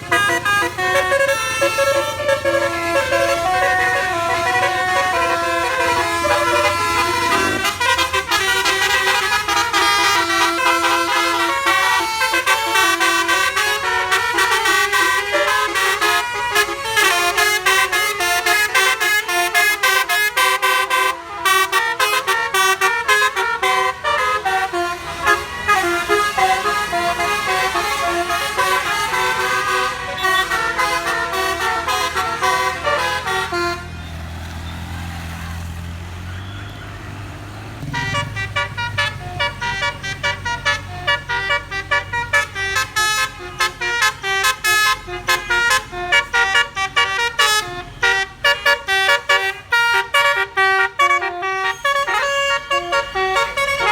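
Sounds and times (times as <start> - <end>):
bus multi-tone air horn melody: 0.0 - 34.2, 37.8 - 53.9
low engine rumble: 24.1 - 43.6.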